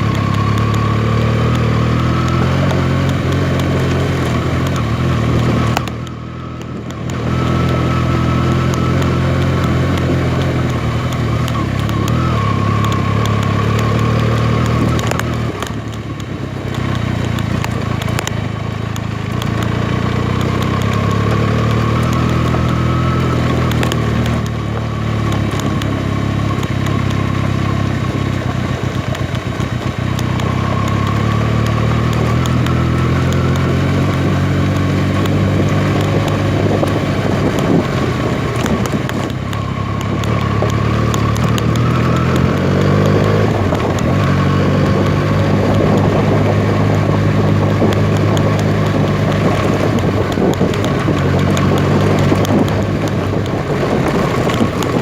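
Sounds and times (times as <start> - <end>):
motorcycle engine running: 0.0 - 55.0
wind buffeting microphone: 32.5 - 55.0.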